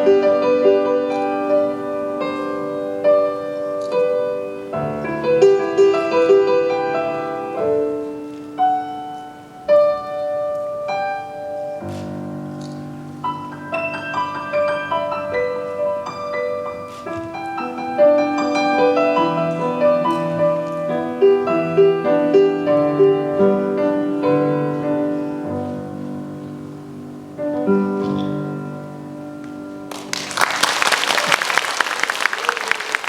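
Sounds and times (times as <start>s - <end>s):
slow gentle piano piece: 0.0s - 30.7s
audience applause: 29.9s - 33.0s.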